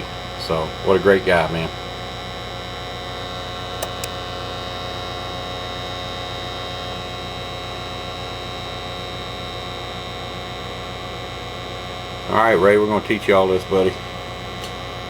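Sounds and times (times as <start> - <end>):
steady machine hum: 0.0 - 15.0
short clicks: 3.8 - 4.2.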